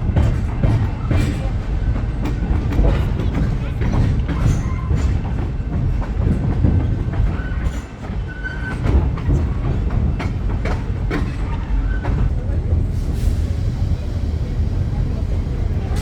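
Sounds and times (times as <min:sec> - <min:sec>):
train rumbling on rails: 0:00.0 - 0:16.0.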